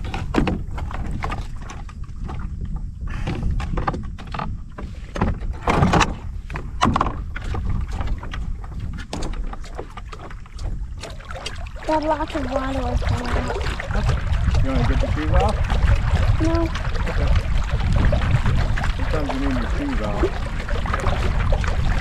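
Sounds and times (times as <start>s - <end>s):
paddle knocking against board: 0.0s - 22.0s
paddle splashing in water: 0.0s - 22.0s
low rumble: 10.7s - 22.0s.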